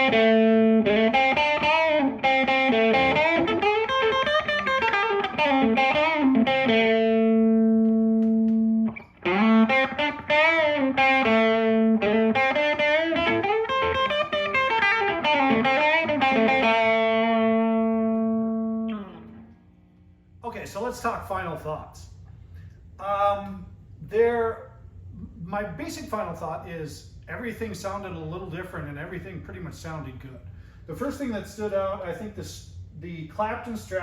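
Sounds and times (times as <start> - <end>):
electric guitar lead phrase: 0.0 - 19.6.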